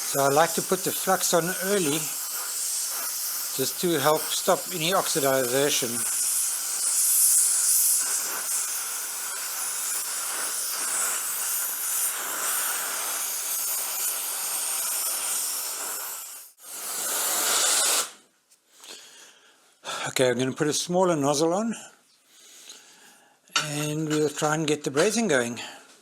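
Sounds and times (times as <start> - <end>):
gas torch flame hissing: 0.0 - 18.2.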